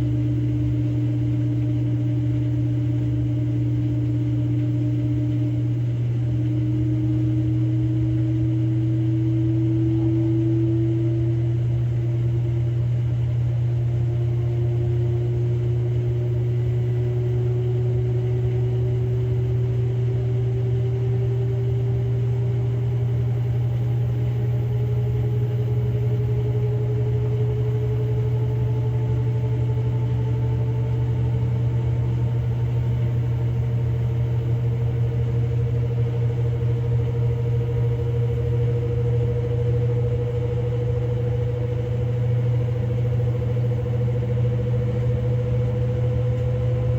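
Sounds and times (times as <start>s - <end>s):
washing machine spinning: 0.0s - 46.9s.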